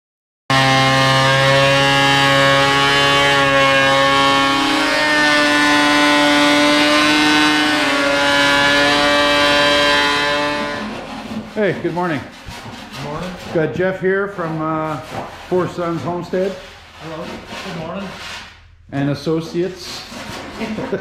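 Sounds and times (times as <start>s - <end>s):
electric power planer running: 0.5s - 11.9s.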